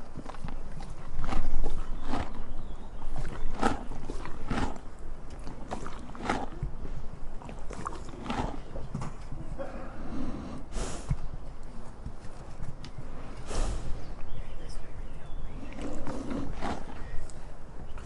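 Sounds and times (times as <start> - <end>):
donkey chewing crunchily: 0.0 - 14.4, 15.2 - 18.0
donkey snorting: 0.8 - 11.3, 13.1 - 14.1, 15.6 - 17.4.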